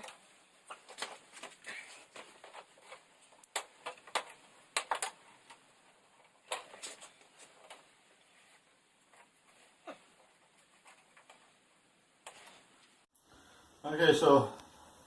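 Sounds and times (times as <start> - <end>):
plastic clips clicking and snapping: 2.5 - 5.6.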